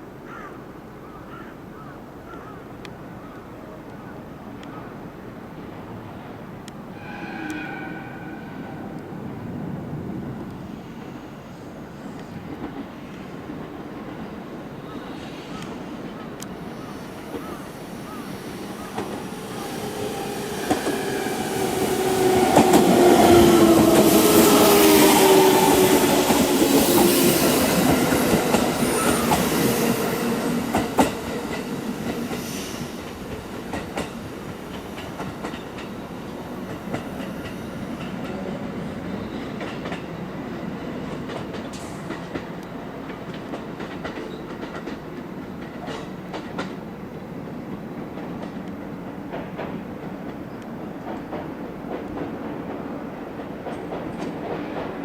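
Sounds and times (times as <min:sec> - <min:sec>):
diesel train engine passing: 0:05.2 - 0:55.0
wheels rumbling on rails: 0:17.2 - 0:32.4.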